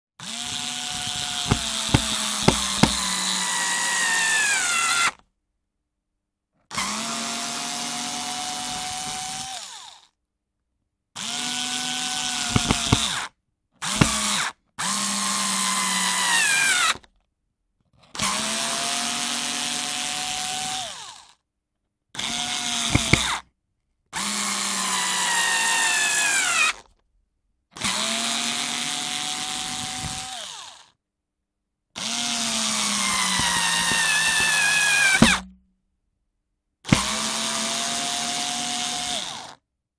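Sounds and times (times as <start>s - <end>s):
electric screwdriver motor whining: 0.2s - 3.4s, 12.5s - 13.2s, 13.9s - 14.3s, 22.3s - 23.4s, 32.0s - 35.4s.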